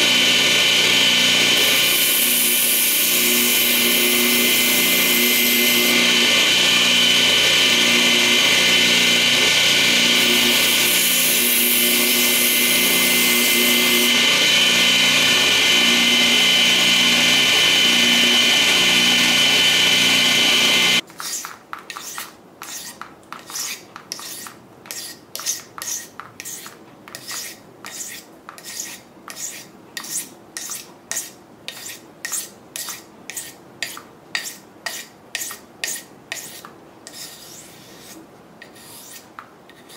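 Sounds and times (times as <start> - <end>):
power tool running: 0.0 - 21.0
metal blade rubbed on abrasive: 21.2 - 33.6, 34.4 - 39.9.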